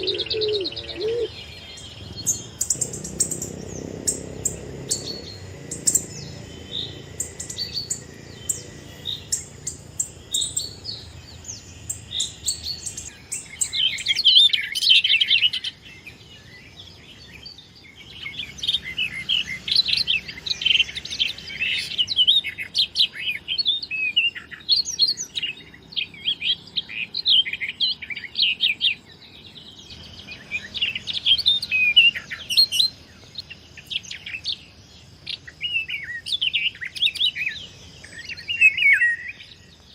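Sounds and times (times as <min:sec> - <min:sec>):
small birds chirping and twittering: 0:00.0 - 0:39.9.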